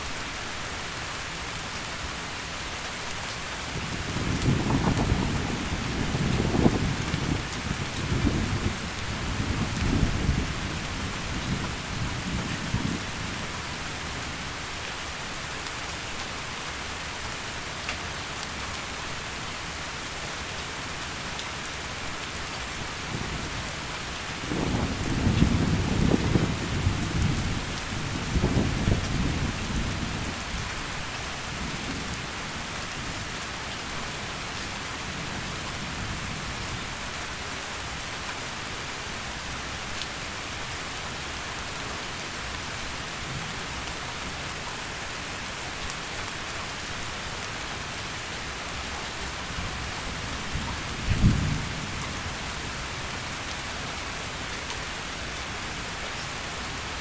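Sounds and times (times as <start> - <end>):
heavy steady rain: 0.0 - 57.0
thunder rumbling: 4.1 - 10.8, 24.5 - 30.4, 50.5 - 52.0
loud low thunderclap: 24.5 - 27.4, 51.0 - 51.8.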